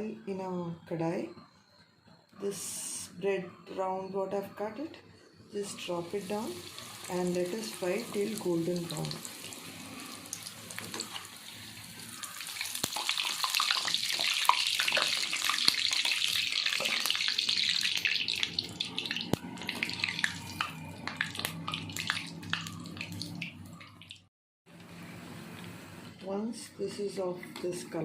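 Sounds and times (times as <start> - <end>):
bread sizzling in hot oil: 5.8 - 23.3.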